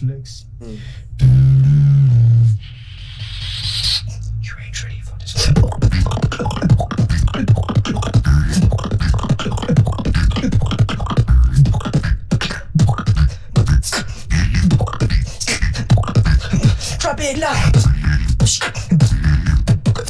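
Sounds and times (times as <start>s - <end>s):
person beatboxing: 1.2s - 20.0s.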